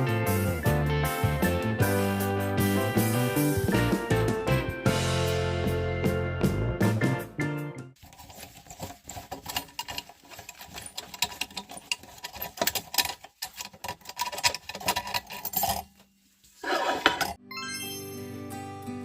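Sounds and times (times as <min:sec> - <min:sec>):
scroll saw cutting wood: 0:16.6 - 0:17.4.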